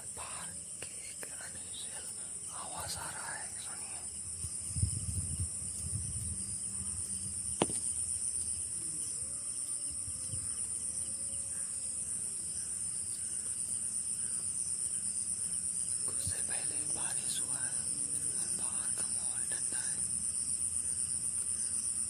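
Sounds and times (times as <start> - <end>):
night insects chirring: 0.0 - 22.0
faint wavering cry: 8.8 - 12.5.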